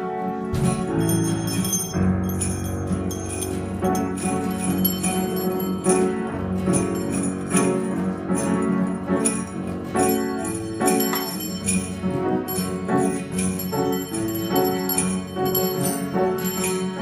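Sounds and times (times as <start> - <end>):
held instrumental tones: 0.5 - 17.0
bells struck in even beat: 0.6 - 17.0.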